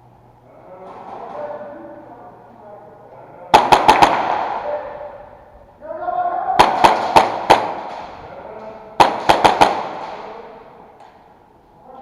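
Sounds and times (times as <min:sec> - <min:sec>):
airsoft gun shots with echo: 0:03.5 - 0:04.9, 0:06.6 - 0:08.2, 0:09.0 - 0:10.4.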